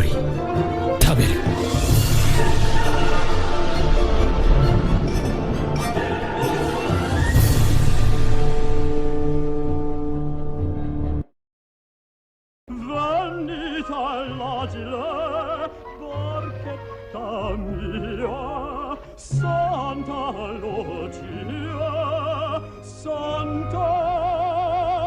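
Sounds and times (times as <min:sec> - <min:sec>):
operatic voice singing: 0:00.0 - 0:08.0, 0:12.7 - 0:25.0
orchestral accompaniment: 0:00.0 - 0:11.2.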